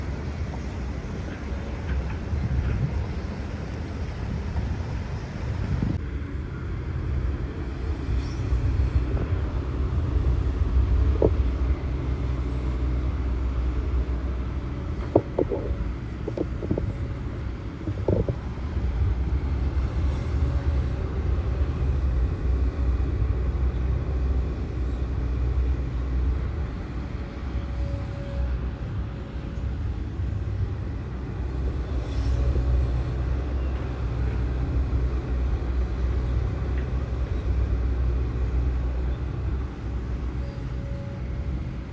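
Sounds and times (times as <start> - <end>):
excavator diesel engine running: 0.0 - 41.9
excavator gear clanking: 10.9 - 12.4, 13.8 - 19.4.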